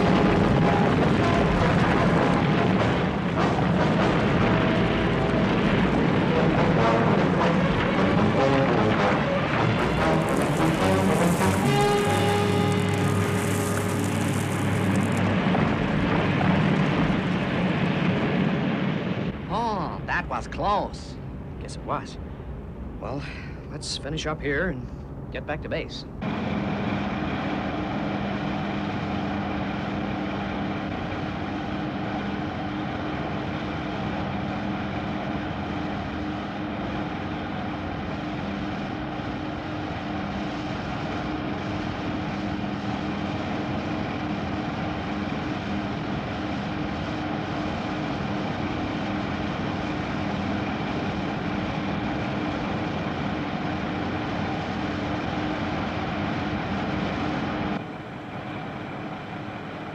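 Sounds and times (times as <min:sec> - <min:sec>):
machine engine drone: 0:00.0 - 0:59.9.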